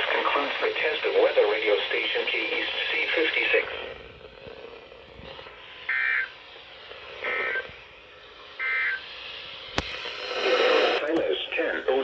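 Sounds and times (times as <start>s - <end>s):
two-tone digital data bursts: 5.9s - 6.3s, 8.6s - 9.0s.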